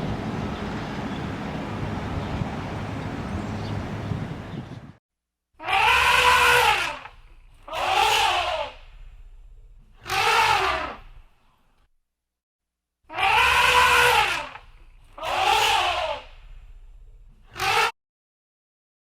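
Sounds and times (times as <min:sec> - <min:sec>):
steady rushing noise: 0:00.0 - 0:05.0
animal crying: 0:05.6 - 0:07.1, 0:07.7 - 0:08.8, 0:10.0 - 0:11.0, 0:13.1 - 0:14.6, 0:15.2 - 0:16.3, 0:17.5 - 0:17.9.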